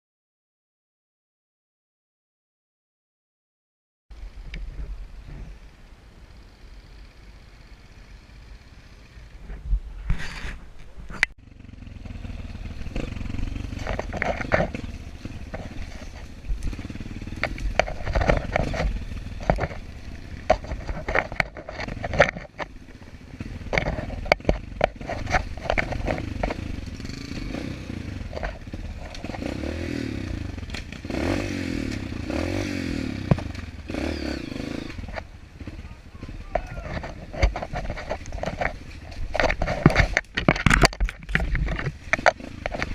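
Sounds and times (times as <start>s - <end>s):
motorcycle engine revving: 4.6s - 42.9s
bike clattering over rough ground: 12.5s - 42.9s.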